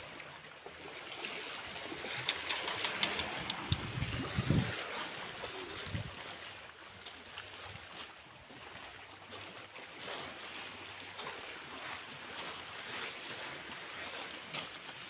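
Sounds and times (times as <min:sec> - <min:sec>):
choppy sea water: 0:00.0 - 0:15.0
strong wind: 0:02.0 - 0:06.3.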